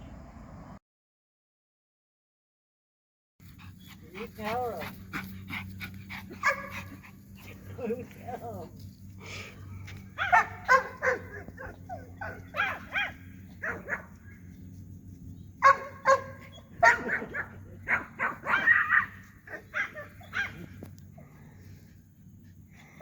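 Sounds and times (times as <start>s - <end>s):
small dogs yapping: 3.6s - 7.9s, 9.9s - 14.7s, 15.6s - 21.1s.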